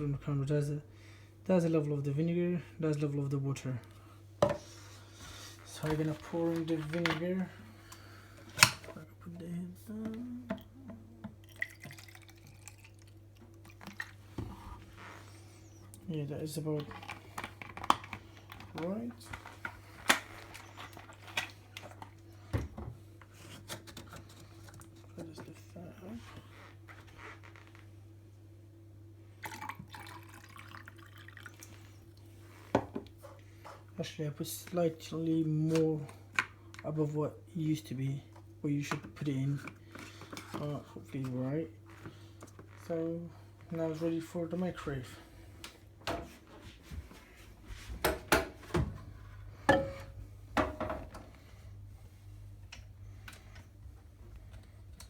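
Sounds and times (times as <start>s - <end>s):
water pouring and trickling: 11.4s - 14.1s, 29.4s - 31.8s.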